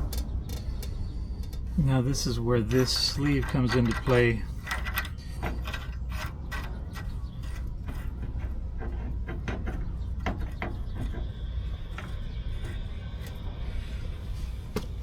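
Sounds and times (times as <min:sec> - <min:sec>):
tools clicking and scraping on metal: 0:00.0 - 0:13.5
steady low hum: 0:00.0 - 0:15.0.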